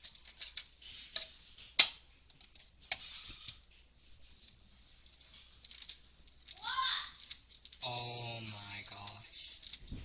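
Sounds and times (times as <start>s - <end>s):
packaging rustling: 5.0s - 10.0s.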